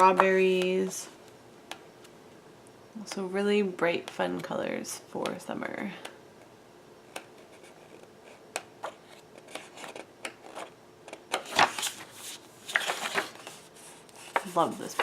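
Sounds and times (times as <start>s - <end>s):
paper rustling: 11.4s - 15.0s.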